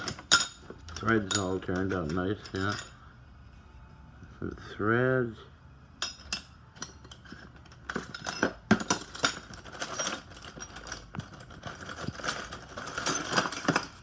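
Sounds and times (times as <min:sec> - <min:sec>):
nuts and bolts clinking: 0:00.0 - 0:03.0, 0:06.0 - 0:14.0.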